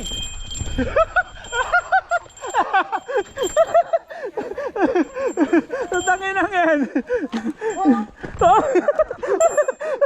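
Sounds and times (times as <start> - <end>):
people laughing: 0.7 - 10.0
people calling out excitedly: 6.0 - 8.8.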